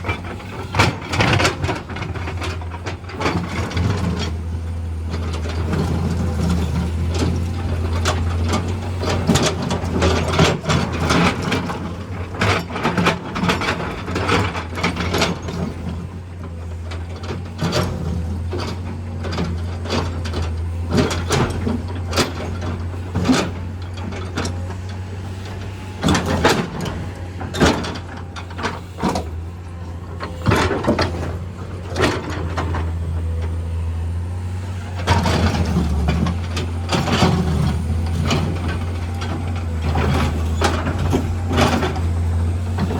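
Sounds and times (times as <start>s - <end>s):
excavator diesel engine running: 0.0s - 42.9s
metallic clanking and rattling: 17.2s - 34.2s.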